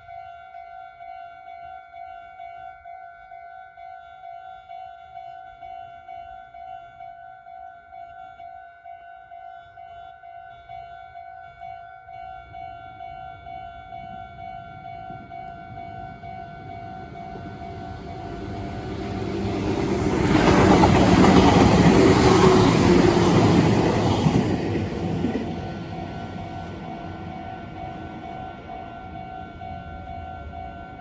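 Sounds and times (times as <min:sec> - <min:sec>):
level-crossing alarm bell ringing: 0:00.0 - 0:31.0
train wheels rumbling on rails: 0:13.4 - 0:31.0.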